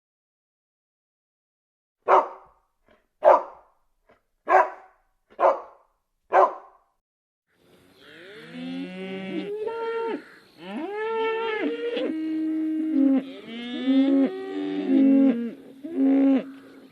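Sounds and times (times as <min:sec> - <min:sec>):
dog barking: 0:02.0 - 0:02.6, 0:03.2 - 0:03.7, 0:04.5 - 0:06.8
cow mooing: 0:08.0 - 0:16.6.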